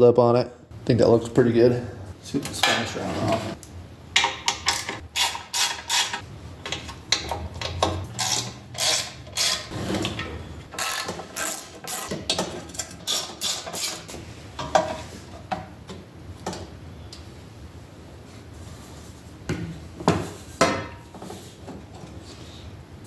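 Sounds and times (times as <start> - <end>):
ratchet wrench clicking: 4.5 - 6.2, 7.7 - 9.7, 10.8 - 12.1, 12.7 - 14.0.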